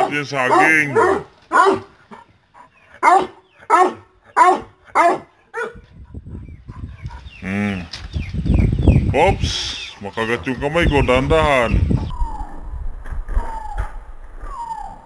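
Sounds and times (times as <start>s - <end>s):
dog barking: 0.0s - 2.2s, 3.0s - 5.8s.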